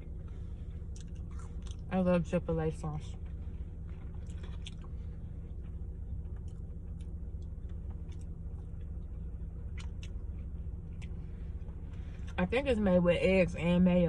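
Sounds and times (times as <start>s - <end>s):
person chewing food: 0.0s - 1.9s, 3.2s - 12.4s
steady low hum: 0.0s - 14.0s.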